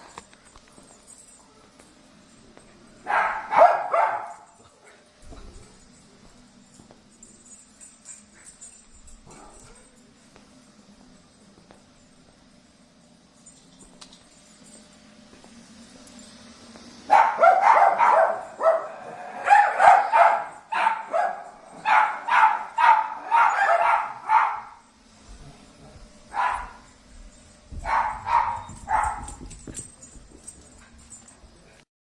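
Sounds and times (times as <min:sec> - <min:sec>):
small dogs barking and yapping: 0:03.0 - 0:05.1, 0:17.1 - 0:24.9, 0:26.3 - 0:26.9, 0:27.7 - 0:30.8.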